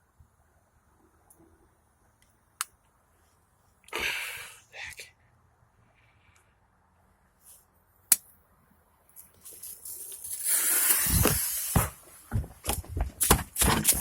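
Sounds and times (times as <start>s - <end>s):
firework rushing hiss: 10.3s - 12.0s
firework cracks: 10.4s - 11.9s.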